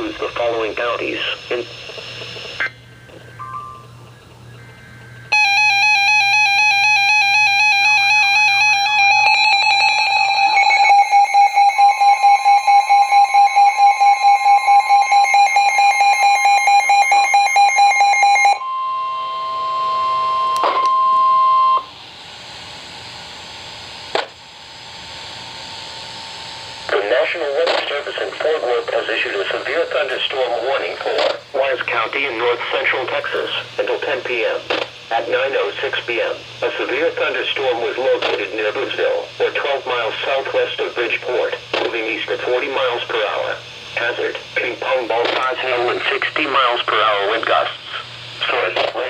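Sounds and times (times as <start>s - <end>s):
buzzy multi-tone alert alarm: 2.6s - 21.9s
steady single tone: 18.5s - 21.9s.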